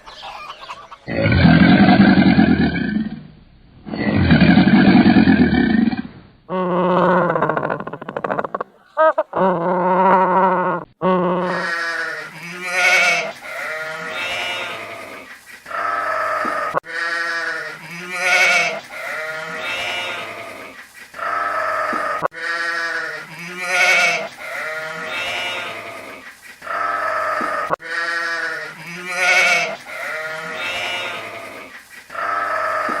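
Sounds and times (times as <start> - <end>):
quavering bleating calls: 11.4 - 33.0.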